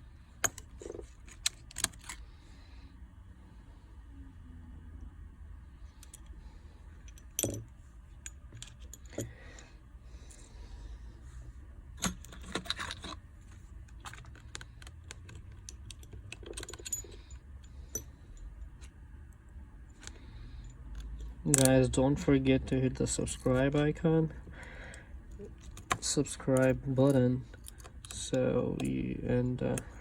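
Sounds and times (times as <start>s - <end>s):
steady low hum: 0.0s - 30.0s
small metallic clicks and taps: 20.9s - 21.8s.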